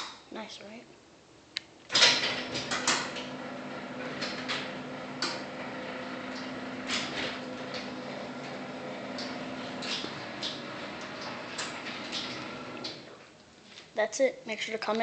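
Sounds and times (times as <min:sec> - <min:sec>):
garage door opener clicking on: 0:01.9 - 0:13.3
motor humming: 0:02.0 - 0:13.3.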